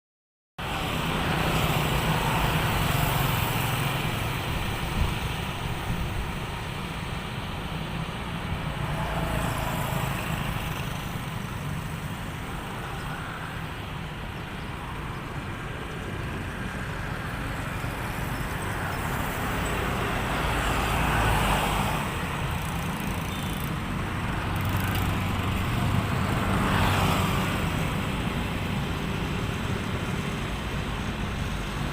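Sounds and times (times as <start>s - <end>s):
road traffic rumble: 0.6s - 31.9s
vehicles passing: 0.6s - 31.9s.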